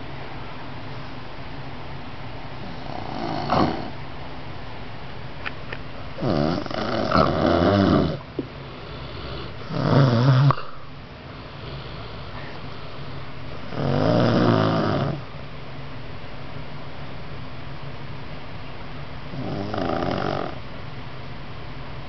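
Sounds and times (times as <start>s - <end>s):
child snoring: 2.6s - 4.0s, 6.2s - 10.8s, 13.7s - 15.2s, 19.3s - 20.6s.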